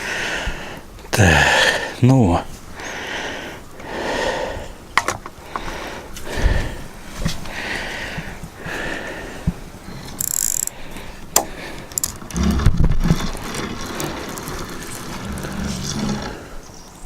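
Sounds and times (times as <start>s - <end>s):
spinning reel clicking and ratcheting: 10.2s - 10.7s, 11.9s - 12.4s.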